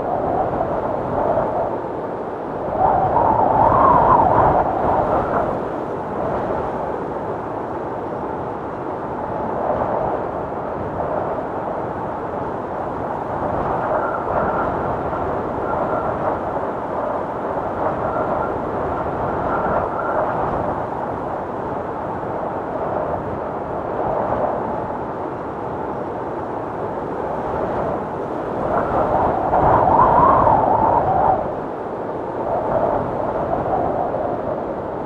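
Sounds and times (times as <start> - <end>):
strong gusty wind: 0.0 - 35.0
faint whistling howl: 28.8 - 31.5.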